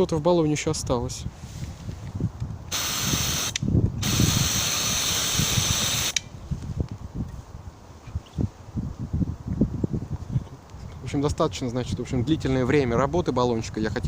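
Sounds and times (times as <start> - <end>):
wind rumble on microphone: 0.0 - 14.0
spray canister hissing bursts: 2.7 - 6.2.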